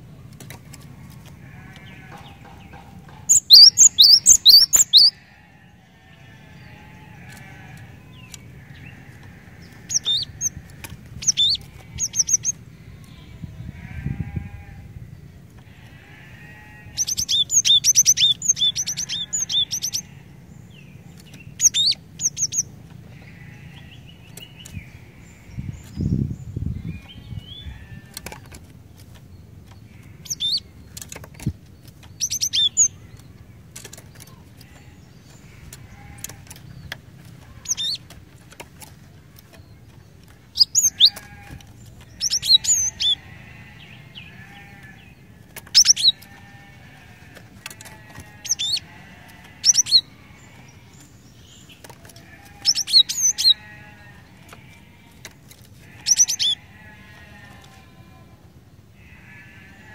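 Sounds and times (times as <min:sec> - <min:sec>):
bird sharp high chirps: 0:03.3 - 0:05.2, 0:45.7 - 0:46.6.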